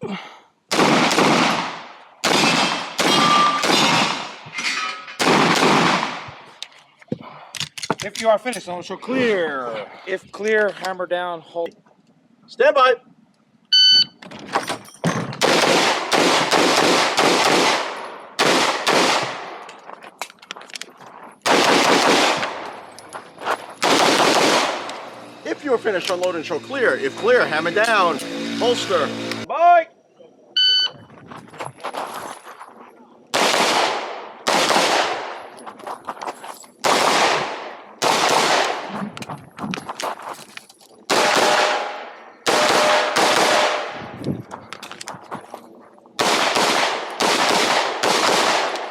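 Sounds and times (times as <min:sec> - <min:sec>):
pistol shots: 0:00.7 - 0:04.4, 0:05.2 - 0:06.4, 0:15.4 - 0:19.7, 0:21.4 - 0:22.7, 0:23.8 - 0:25.1, 0:33.3 - 0:35.4, 0:36.8 - 0:38.9, 0:41.1 - 0:44.0, 0:46.2 - 0:48.9.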